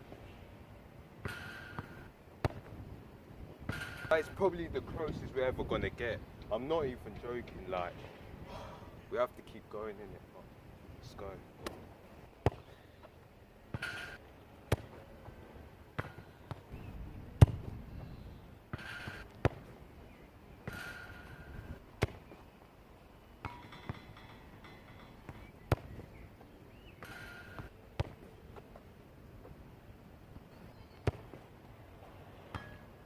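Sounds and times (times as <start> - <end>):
football kick thuds: 1.2 - 2.8, 12.4 - 12.8, 14.7 - 15.0, 16.0 - 17.8, 18.7 - 19.7, 22.0 - 22.3, 25.3 - 26.2, 27.0 - 28.2, 31.0 - 31.4.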